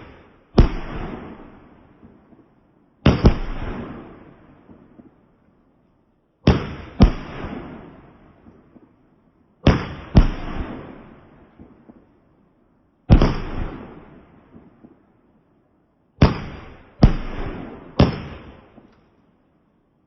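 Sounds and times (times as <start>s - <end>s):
fireworks bangs with rumbling echo: 0.0s - 5.3s, 6.4s - 12.2s, 13.1s - 15.1s, 16.2s - 18.9s.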